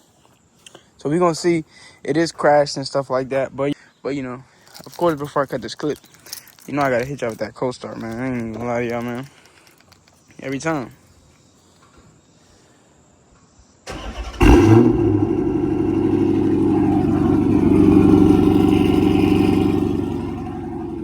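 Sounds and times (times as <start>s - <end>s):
car engine revving and idling: 14.0s - 21.0s.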